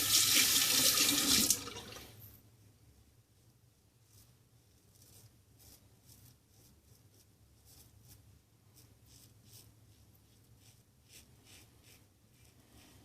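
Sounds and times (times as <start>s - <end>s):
razor scraping stubble: 8.8s - 13.0s.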